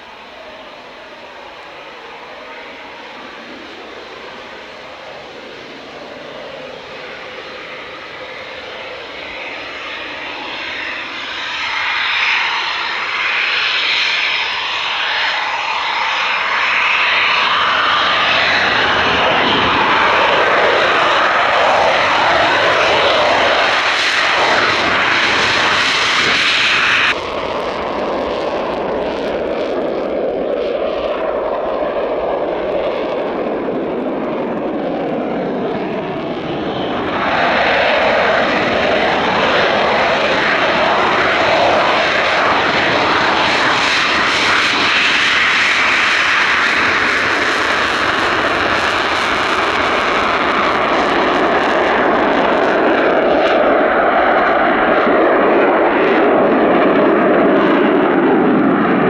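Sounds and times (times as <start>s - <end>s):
jet engines running: 0.0s - 59.0s.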